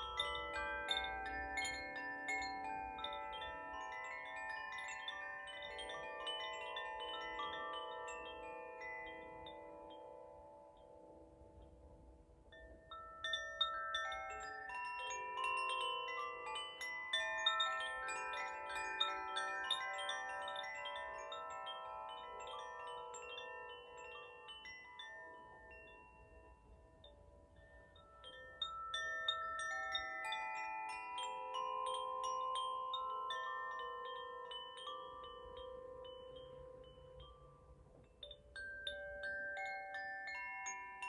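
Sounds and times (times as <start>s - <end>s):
wind chimes ringing: 0.0s - 41.0s.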